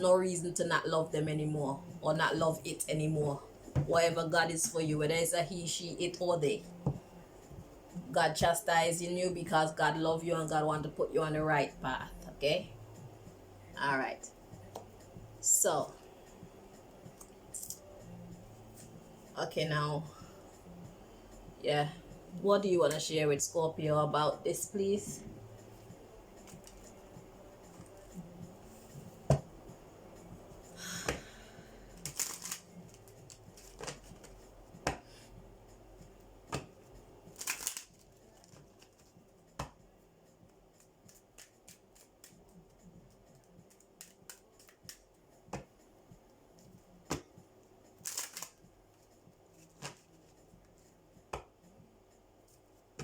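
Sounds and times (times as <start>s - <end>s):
cards riffling: 32.0s - 34.4s, 37.3s - 39.1s, 40.8s - 42.5s, 48.0s - 48.6s
cards snapping: 32.0s - 35.0s, 37.3s - 39.8s, 41.1s - 42.4s, 43.7s - 45.7s, 48.0s - 48.6s, 49.6s - 50.1s.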